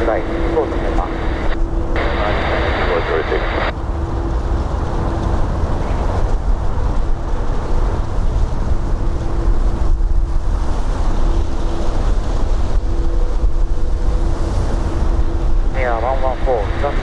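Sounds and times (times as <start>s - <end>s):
faint hum: 0.0s - 6.3s, 9.1s - 17.0s
wind buffeting microphone: 0.0s - 17.0s.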